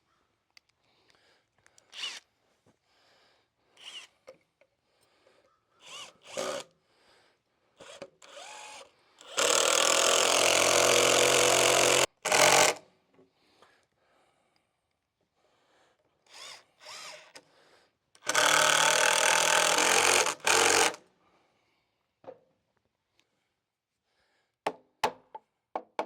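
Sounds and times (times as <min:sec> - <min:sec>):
power drill boring into wood: 0:01.9 - 0:02.2, 0:03.8 - 0:04.1, 0:05.8 - 0:06.7, 0:07.8 - 0:12.8, 0:16.3 - 0:17.4, 0:18.2 - 0:21.0.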